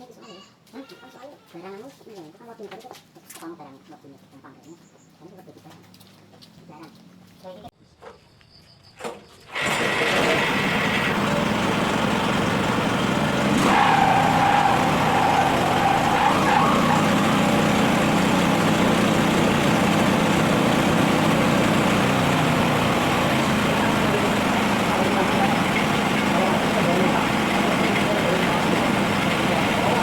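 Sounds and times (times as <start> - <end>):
sawmill engine running: 9.5 - 30.0
saw whine: 9.6 - 30.0.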